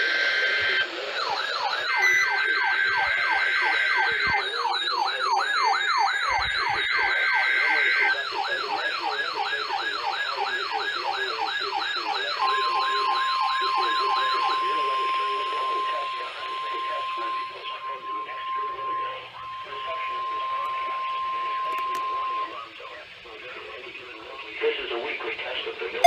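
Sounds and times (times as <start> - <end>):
wailing siren alarm: 0.0 - 22.6
high beeping tones: 1.9 - 4.8.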